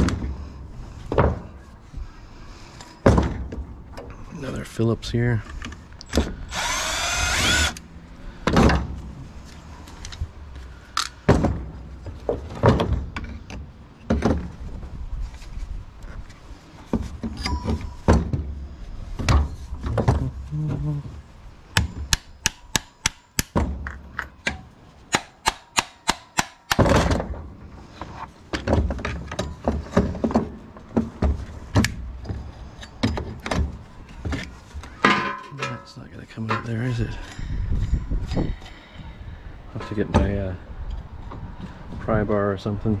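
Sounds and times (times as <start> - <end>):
power drill whirring: 6.5 - 7.8.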